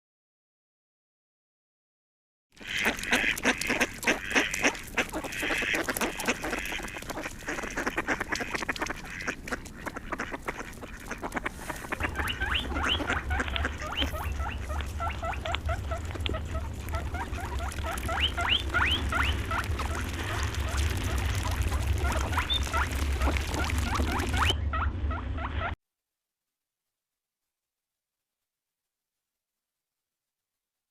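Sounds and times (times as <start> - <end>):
farm birds calling: 2.6 - 25.8
steady low rumble: 3.7 - 25.8
high rising peeps: 12.0 - 19.9.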